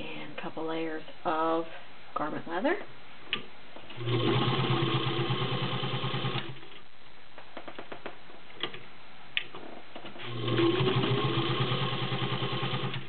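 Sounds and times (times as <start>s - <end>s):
sewing machine stitching leather: 3.9s - 6.8s, 10.2s - 13.0s.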